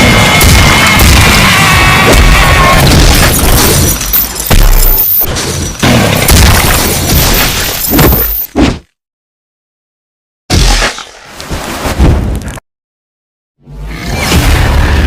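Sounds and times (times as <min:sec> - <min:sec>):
battle crashes and impact hits: 0:00.0 - 0:08.8.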